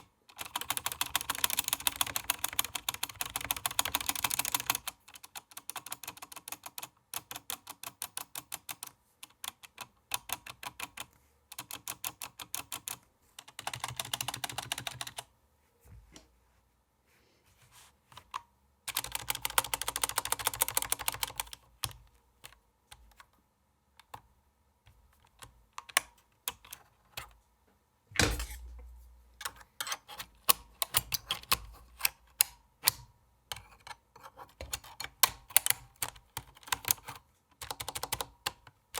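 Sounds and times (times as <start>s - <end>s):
mechanical keyboard typing: 0.0s - 15.3s, 18.9s - 22.0s, 30.4s - 34.0s, 34.6s - 38.7s
deep key strike: 28.2s - 29.2s.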